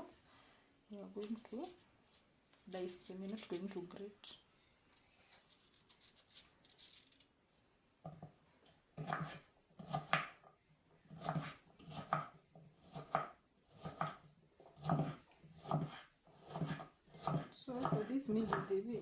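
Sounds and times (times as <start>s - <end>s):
knife chopping on cutting board: 9.0s - 10.5s, 11.1s - 18.7s.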